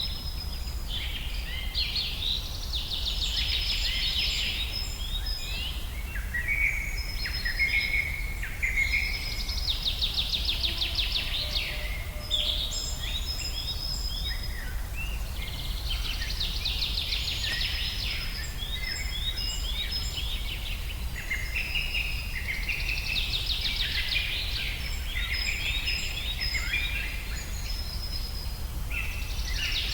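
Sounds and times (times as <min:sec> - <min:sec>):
birds chirping and whistling: 0:06.2 - 0:29.9.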